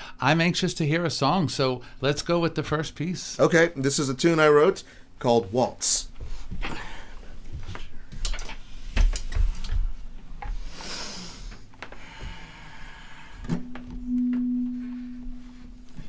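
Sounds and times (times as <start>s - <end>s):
steady low held note: 13.6s - 16.0s.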